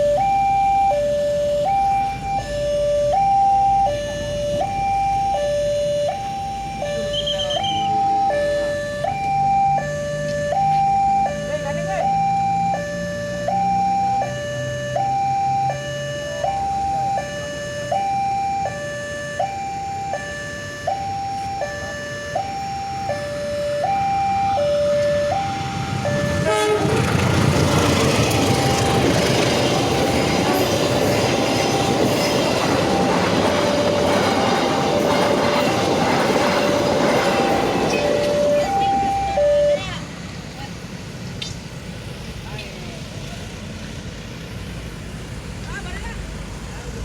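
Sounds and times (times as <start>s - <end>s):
two-tone crossing alarm: 0.0s - 40.1s
train wheels clattering on rails: 25.0s - 39.4s.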